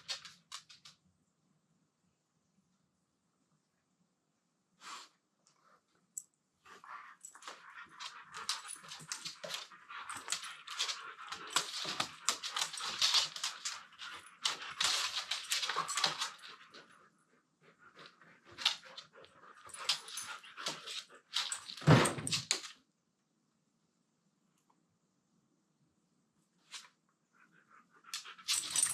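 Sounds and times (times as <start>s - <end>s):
dogs scuffling: 7.2s - 16.8s.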